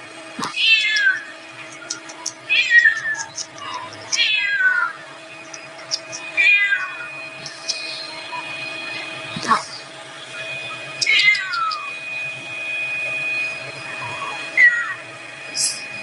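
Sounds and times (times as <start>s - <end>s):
cat meowing: 0.5s - 1.3s, 2.5s - 5.0s, 6.4s - 7.1s, 11.0s - 11.9s, 14.2s - 15.0s.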